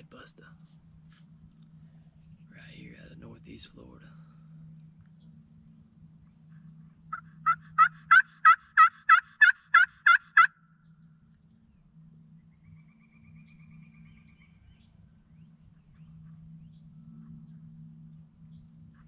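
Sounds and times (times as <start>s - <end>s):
turkey call yelps: 7.1s - 10.6s.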